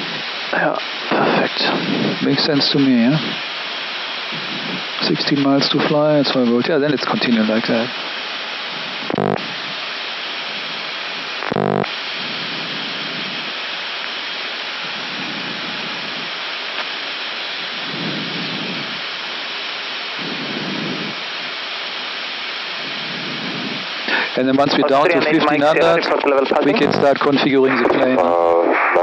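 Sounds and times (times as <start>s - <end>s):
rushing airflow: 0.0s - 6.5s, 7.7s - 24.4s
air-conditioning noise: 0.0s - 28.4s.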